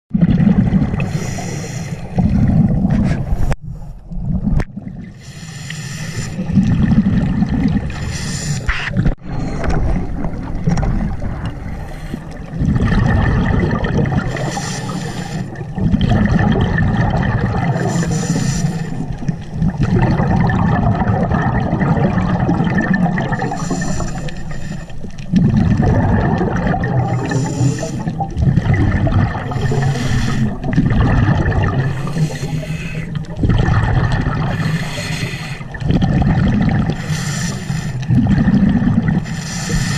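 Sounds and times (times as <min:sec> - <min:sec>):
exhaled bubbles: 0:00.1 - 0:39.9
hissing regulator inhale: 0:01.0 - 0:02.2, 0:05.2 - 0:06.5, 0:08.0 - 0:09.7, 0:14.3 - 0:15.6, 0:17.8 - 0:19.2, 0:23.4 - 0:25.2, 0:27.0 - 0:28.2, 0:29.5 - 0:30.6, 0:31.9 - 0:33.2, 0:34.5 - 0:35.7, 0:36.9 - 0:38.1, 0:39.2 - 0:39.9.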